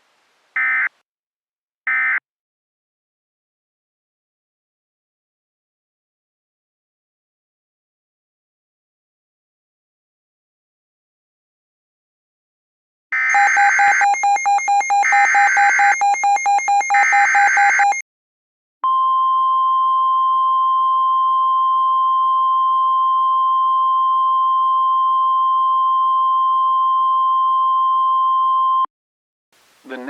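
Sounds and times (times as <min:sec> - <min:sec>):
steady warning alarm tone: 0:13.2 - 0:18.0.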